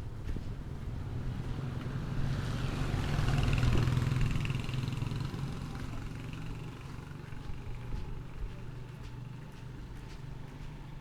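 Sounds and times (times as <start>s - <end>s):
vehicle engine passing by: 1.0s - 7.0s.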